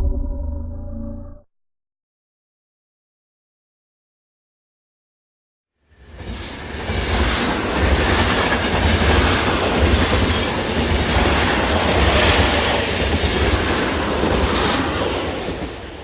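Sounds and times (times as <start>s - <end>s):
train rumbling on track: 5.9s - 16.0s
train wheels clattering: 6.1s - 16.0s.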